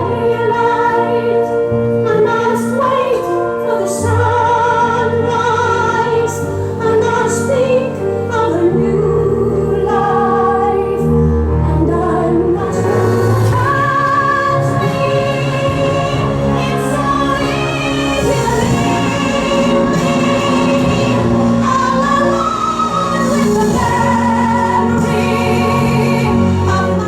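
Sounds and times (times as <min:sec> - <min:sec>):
orchestral backing: 0:00.0 - 0:27.0
woman singing with vibrato: 0:00.0 - 0:27.0.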